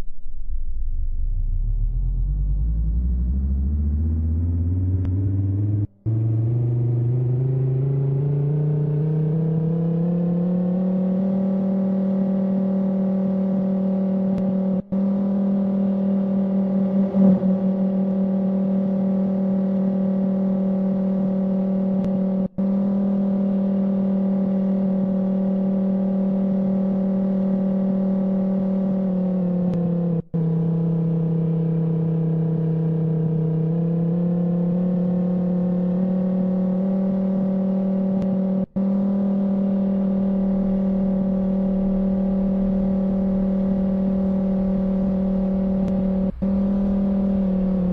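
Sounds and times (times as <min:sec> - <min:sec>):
tornado warning siren: 0:38.8 - 0:47.9.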